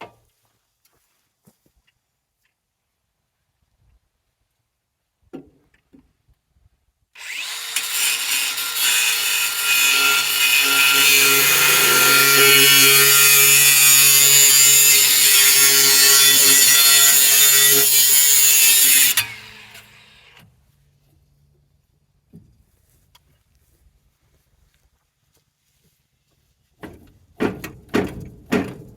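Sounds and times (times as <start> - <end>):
angle grinder cutting steel: 7.2 - 20.4.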